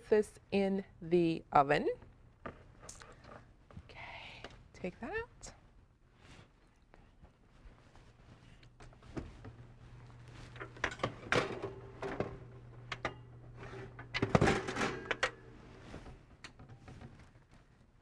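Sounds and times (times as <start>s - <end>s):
tray knocks and clatters: 10.6s - 15.4s.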